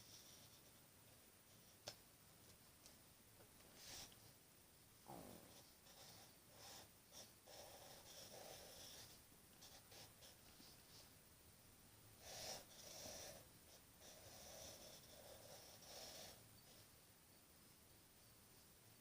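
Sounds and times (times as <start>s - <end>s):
pencil scratching on paper: 5.5s - 11.1s, 12.2s - 16.9s.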